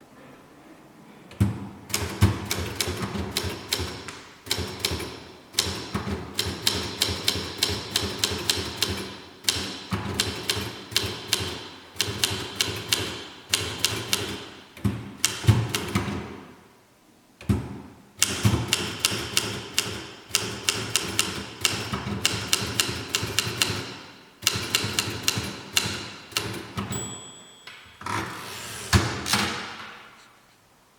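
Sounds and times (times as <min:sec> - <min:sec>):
typewriter keystroke clacks: 0:01.9 - 0:14.6, 0:15.2 - 0:16.2, 0:18.2 - 0:27.0.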